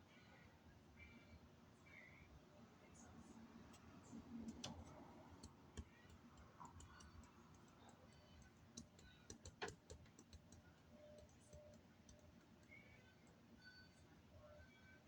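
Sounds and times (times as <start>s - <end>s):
faint clicks and ticks: 3.7s - 13.4s.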